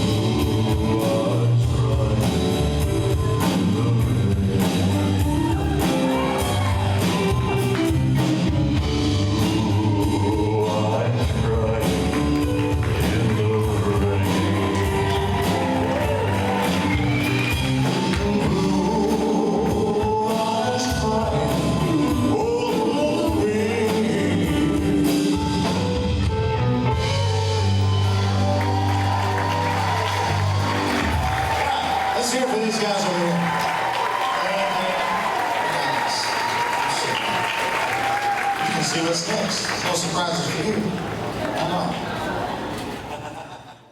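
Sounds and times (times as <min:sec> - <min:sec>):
man singing: 0:00.0 - 0:06.7, 0:08.7 - 0:16.8, 0:17.7 - 0:25.8
live band playing: 0:00.0 - 0:35.2.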